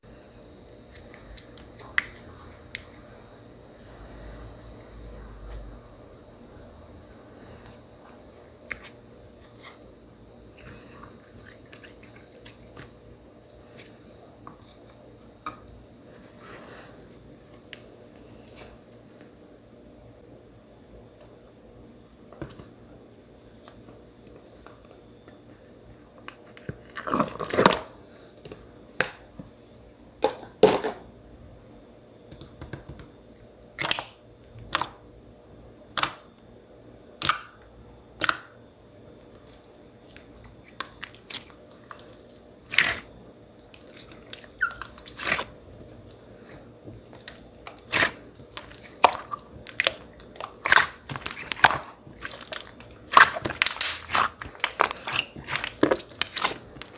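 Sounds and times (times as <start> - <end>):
slime sticky pops and squelches: 50.6 - 56.6.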